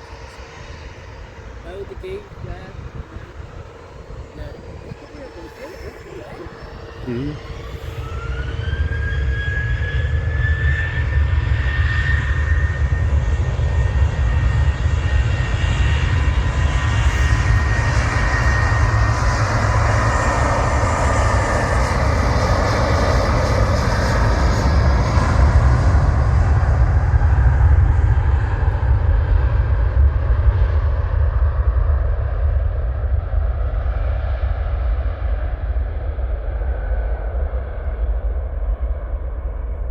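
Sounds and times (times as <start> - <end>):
jet engines spooling up: 0.0 - 27.2.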